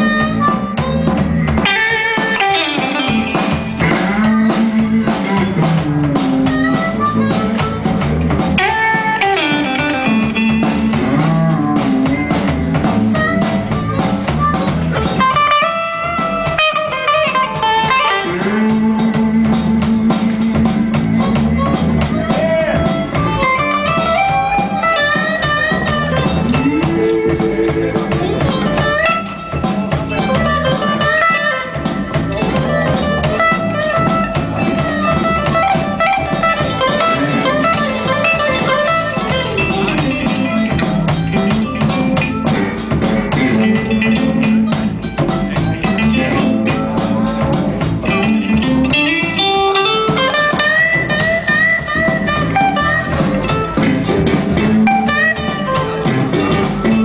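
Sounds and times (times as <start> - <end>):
bass: 0.0 - 57.0
blues guitar lead: 0.0 - 57.0
fast drum beat: 0.0 - 57.0.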